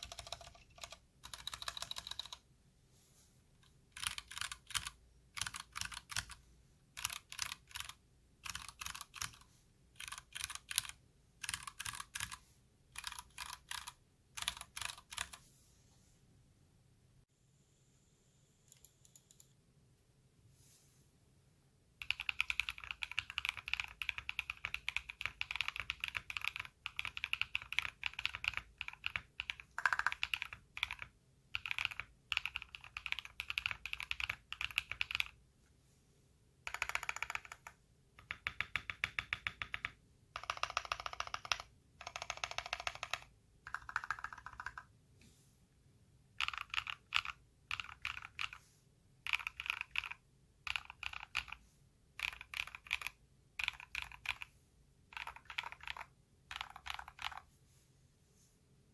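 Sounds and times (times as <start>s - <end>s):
mechanical keyboard typing: 0.0s - 2.4s, 3.6s - 6.4s, 7.0s - 12.4s, 13.0s - 15.4s, 22.0s - 35.4s, 36.7s - 44.9s, 46.4s - 48.6s, 49.2s - 51.6s, 52.2s - 54.5s, 55.1s - 57.5s.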